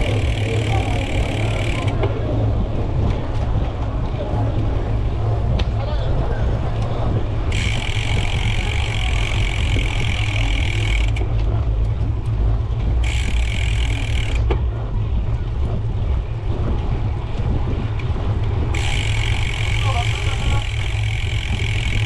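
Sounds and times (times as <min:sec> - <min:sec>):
bicycle freehub ratcheting buzz: 0:00.0 - 0:02.1, 0:07.4 - 0:11.4, 0:12.9 - 0:14.6, 0:18.7 - 0:22.0
wind rumbling on microphone: 0:00.0 - 0:22.0.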